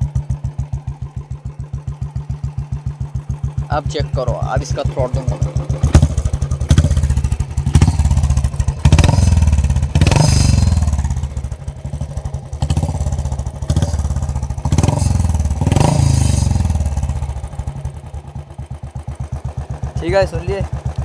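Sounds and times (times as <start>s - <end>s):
motorcycle engine revving: 0.0s - 21.0s.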